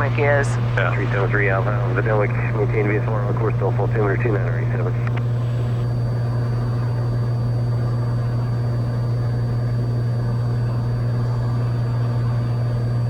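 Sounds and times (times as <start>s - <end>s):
airplane engine and propeller drone: 0.0s - 13.0s.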